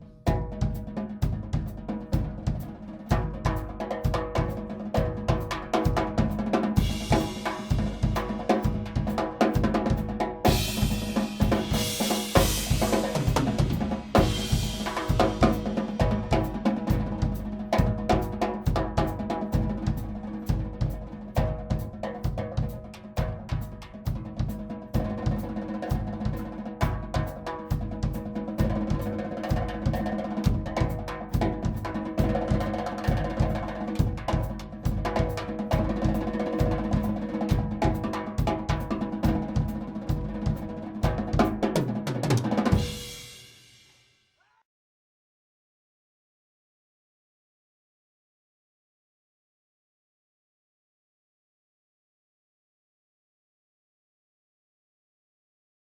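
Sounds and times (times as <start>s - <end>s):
bass drum and snare strokes: 0.0s - 32.7s.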